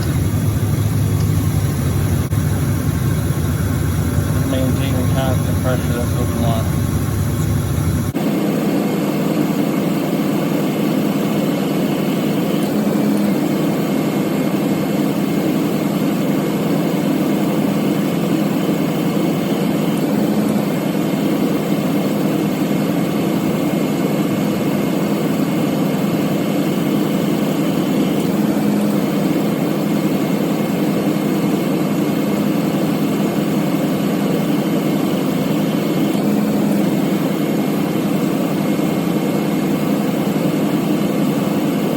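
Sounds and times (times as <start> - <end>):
compressor clutch cycling: 0.0 - 8.2
pickup engine idling: 0.0 - 41.9.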